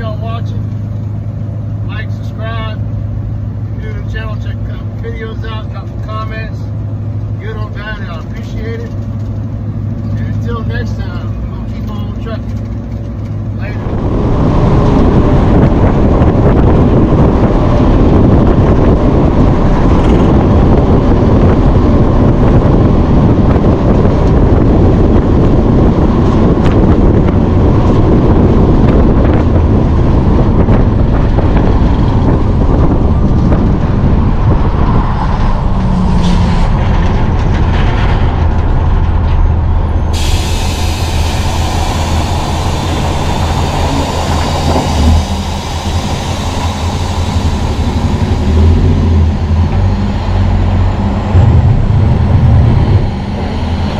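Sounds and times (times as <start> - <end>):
road noise: 0.0 - 53.9
truck diesel engine drone: 0.0 - 53.9
high hiss: 40.1 - 48.6.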